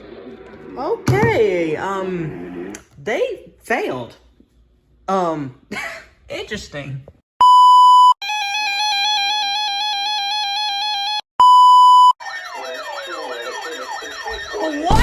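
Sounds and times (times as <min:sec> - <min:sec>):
two-tone alarm: 0:07.4 - 0:15.0
electronic alert beep: 0:11.4 - 0:15.0.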